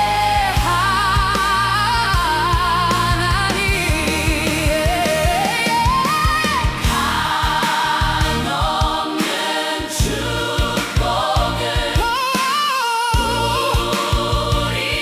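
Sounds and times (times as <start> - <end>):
band with steady drum beat: 0.0 - 15.0
choir singing: 0.0 - 15.0.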